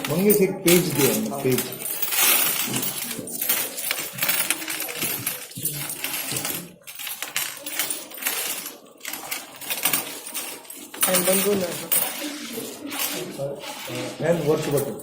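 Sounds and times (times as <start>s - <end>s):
coins clinking: 0.0s - 15.0s.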